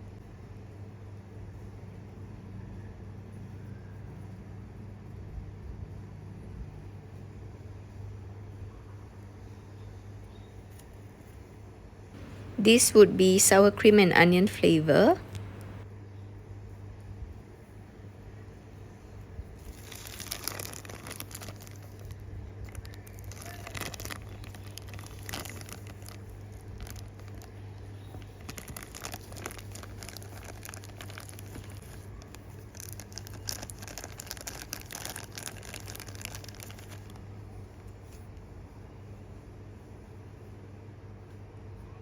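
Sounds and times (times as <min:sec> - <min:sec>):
plastic packaging crinkling: 0:12.2 - 0:15.8, 0:19.7 - 0:37.3.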